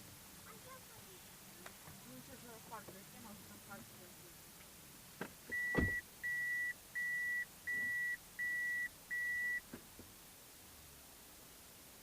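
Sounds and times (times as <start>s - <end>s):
dull thump: 5.2s - 6.0s
high electronic beeps: 5.5s - 9.6s.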